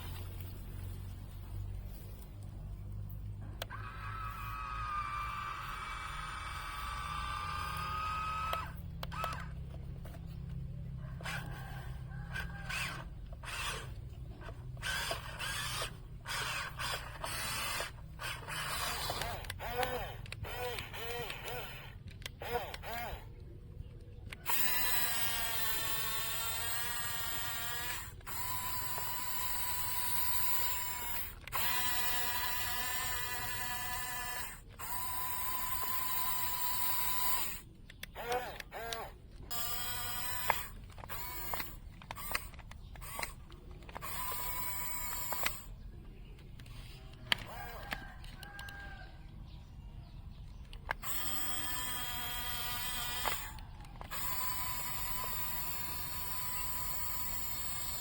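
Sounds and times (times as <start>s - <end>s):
toy excavator gear motors whining: 0.0s - 49.0s, 50.2s - 58.0s.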